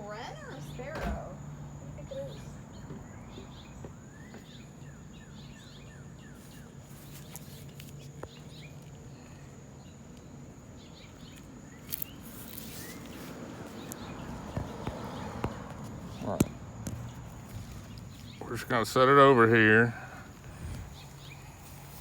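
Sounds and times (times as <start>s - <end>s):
faint bird chirps: 2.0s - 10.0s.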